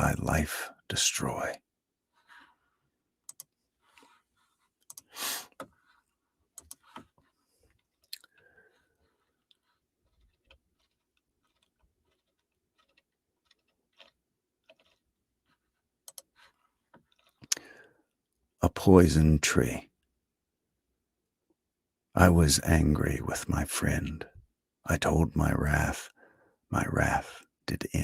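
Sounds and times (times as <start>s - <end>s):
soft clicks: 3.2s - 3.6s, 4.8s - 5.7s, 6.5s - 7.1s, 16.0s - 16.5s
small rustles: 5.6s - 17.5s.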